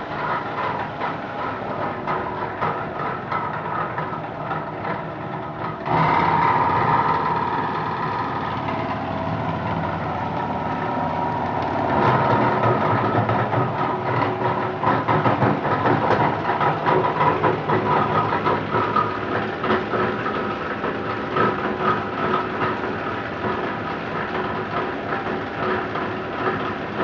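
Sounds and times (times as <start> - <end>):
machine motor hum: 0.0 - 23.6
dense irregular rattle: 0.0 - 27.0.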